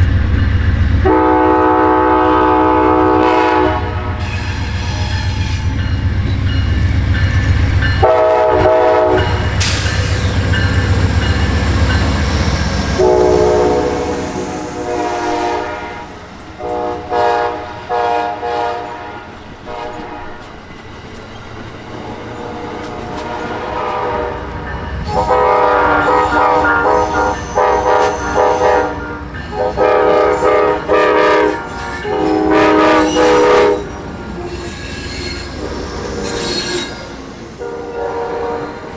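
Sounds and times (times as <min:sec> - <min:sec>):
heavy train rumble: 0:00.0 - 0:38.9
locomotive air horn blasts: 0:01.0 - 0:05.7, 0:08.0 - 0:09.7, 0:12.9 - 0:20.4, 0:22.9 - 0:38.9
train wheels clacking: 0:04.2 - 0:17.6, 0:18.8 - 0:38.9.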